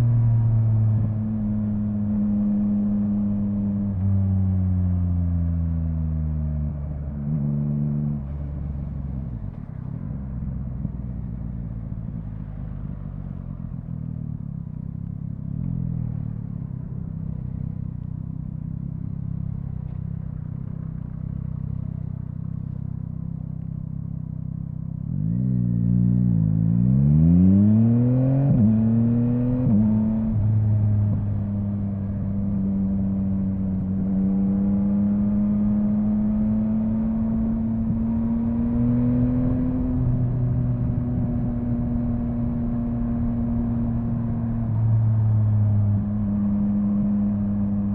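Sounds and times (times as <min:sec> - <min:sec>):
motorcycle engine revving: 0:24.0 - 0:47.9.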